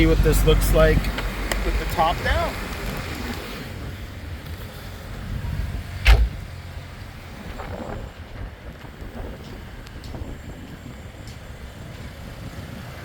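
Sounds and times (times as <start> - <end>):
low steady rumble: 3.8 - 12.6
car door shutting: 6.0 - 6.5.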